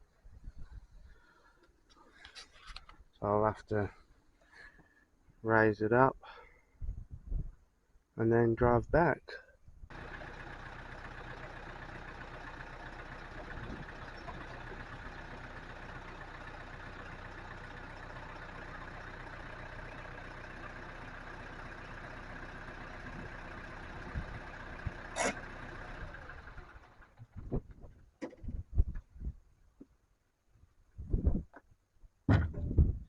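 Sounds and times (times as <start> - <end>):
tractor engine running: 9.9 - 27.9.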